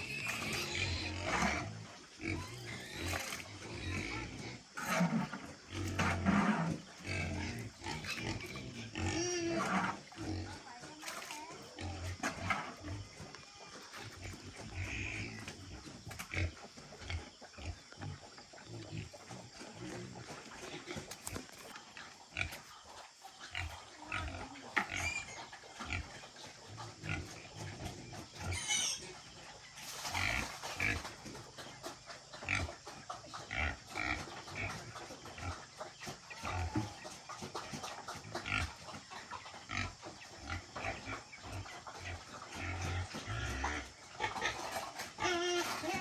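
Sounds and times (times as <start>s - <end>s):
pigs grunting: 0.0s - 46.0s
high-pitched pig call: 28.4s - 29.1s, 45.2s - 46.0s.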